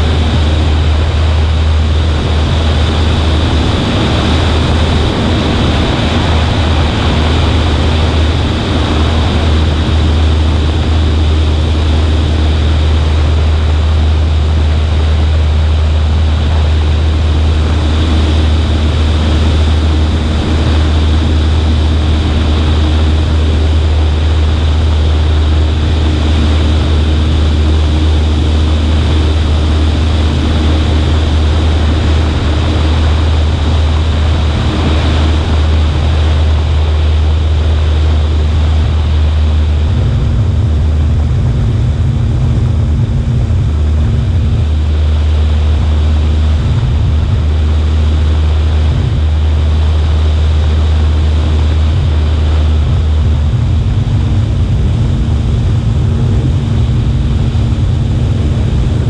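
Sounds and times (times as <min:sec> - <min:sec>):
propeller plane engine droning: 0:00.0 - 0:59.0.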